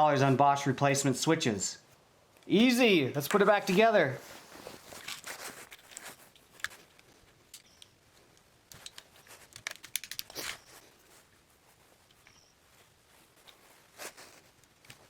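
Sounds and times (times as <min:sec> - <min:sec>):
rustles of parts handled: 0:02.3 - 0:15.0
small sharp clicks of parts: 0:05.0 - 0:10.8.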